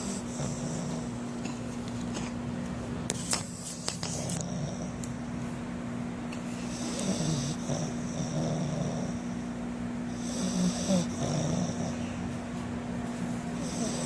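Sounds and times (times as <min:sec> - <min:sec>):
faint steady hum: 0:00.0 - 0:14.0
person snoring: 0:10.2 - 0:12.0, 0:13.6 - 0:14.0.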